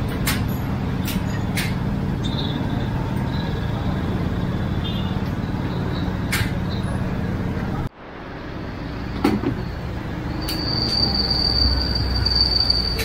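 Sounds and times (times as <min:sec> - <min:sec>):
vehicle road noise: 0:00.0 - 0:13.0
high steady whine: 0:07.7 - 0:13.0.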